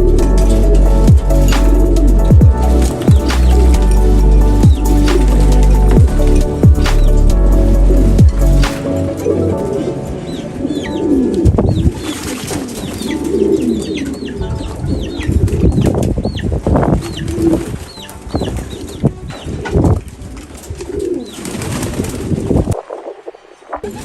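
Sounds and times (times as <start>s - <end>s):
pigeons cooing: 0.0s - 24.0s
wings flapping and clapping: 3.0s - 4.0s, 4.9s - 5.7s, 19.9s - 22.8s.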